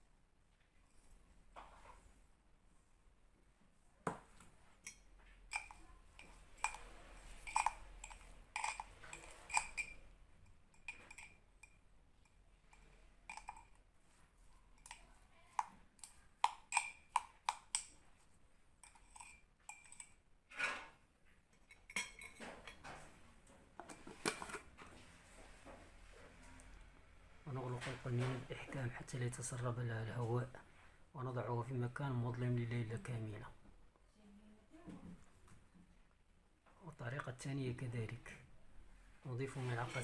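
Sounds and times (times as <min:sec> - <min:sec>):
metal spoon tapping glass jar: 0:04.8 - 0:10.1, 0:10.7 - 0:13.8, 0:14.8 - 0:17.9, 0:18.8 - 0:20.2.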